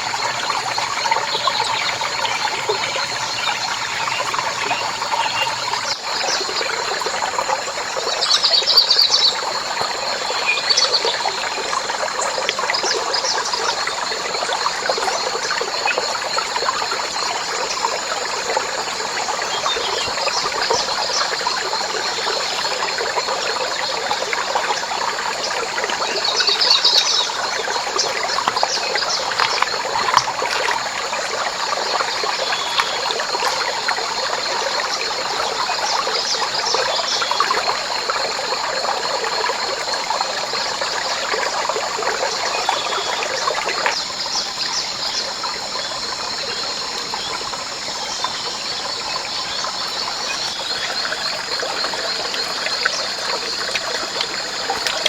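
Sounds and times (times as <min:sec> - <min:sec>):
water trickling: 0:00.0 - 0:55.0.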